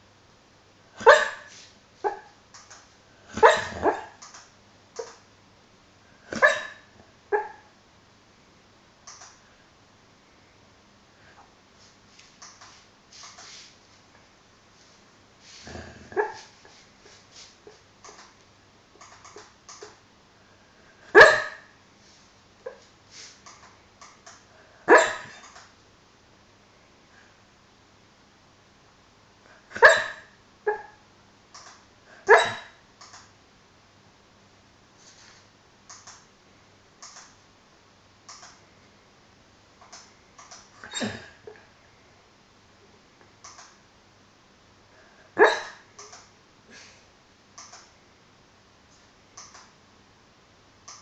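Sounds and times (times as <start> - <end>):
dog barking in sleep: 1.0 - 2.4, 3.3 - 4.2, 6.2 - 7.7, 15.6 - 16.8, 21.0 - 21.8, 24.5 - 25.4, 29.6 - 31.0, 32.1 - 32.8, 45.0 - 45.9
dog woofing: 3.3 - 4.2, 15.7 - 16.5.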